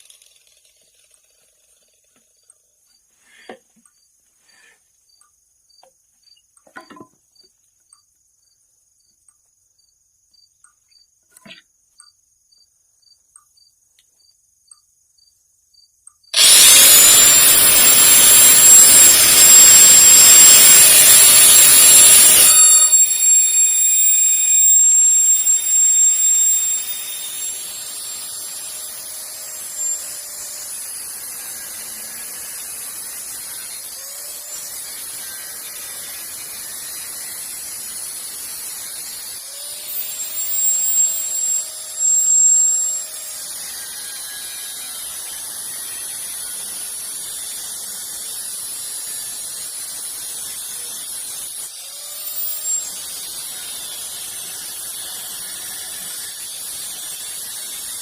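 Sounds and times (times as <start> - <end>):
power tool motor: 0.0 - 2.5, 16.4 - 58.0.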